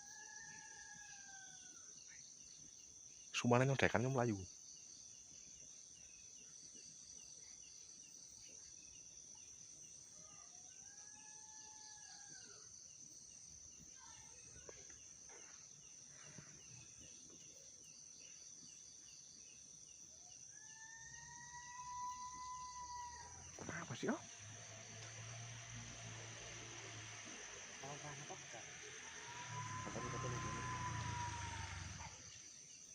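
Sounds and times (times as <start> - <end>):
crickets chirping: 0.0 - 32.9
long whining calls: 20.8 - 32.5.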